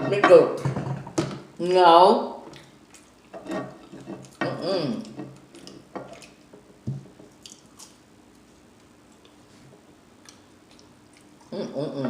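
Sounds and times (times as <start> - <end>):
chewing and wet mouth smacking: 2.5 - 4.4, 5.0 - 6.5, 7.3 - 9.5, 10.2 - 11.6.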